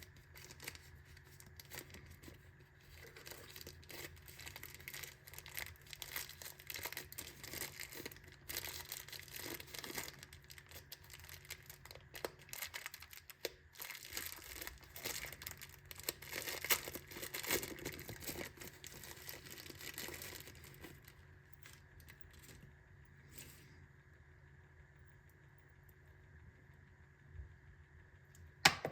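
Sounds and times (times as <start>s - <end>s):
packaging crinkling and tearing: 0.0s - 22.6s.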